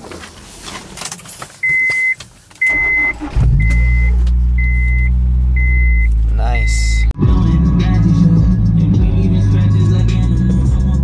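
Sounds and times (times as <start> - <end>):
car engine cranking and idling: 0.8 - 11.0
car warning chime beeping: 1.6 - 7.2.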